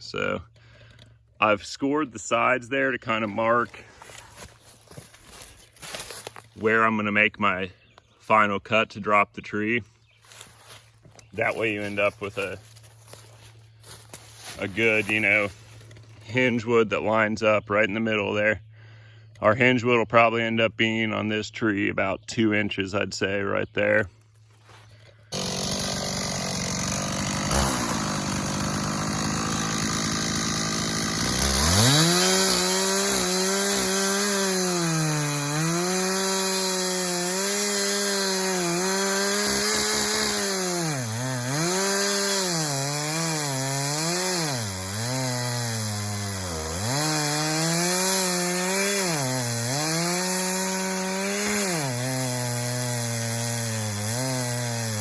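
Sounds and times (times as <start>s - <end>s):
chainsaw cutting wood: 3.2s - 6.7s, 10.3s - 16.5s, 25.0s - 55.0s.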